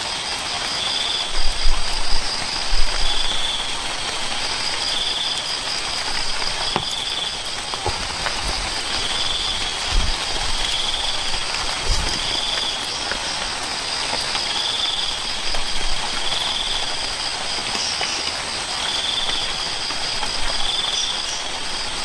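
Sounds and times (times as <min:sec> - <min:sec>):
steady rain hiss: 0:00.0 - 0:22.0
low thumps: 0:05.7 - 0:12.6.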